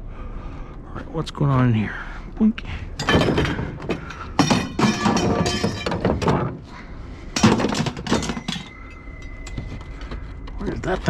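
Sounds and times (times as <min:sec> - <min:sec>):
scrap metal clanging onto pile: 0:03.0 - 0:06.6, 0:07.4 - 0:09.0.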